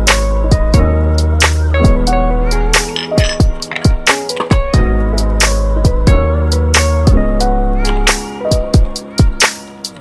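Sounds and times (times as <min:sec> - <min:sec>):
deep bass: 0:00.0 - 0:02.9, 0:04.7 - 0:08.2
music with drum beat: 0:02.8 - 0:07.2.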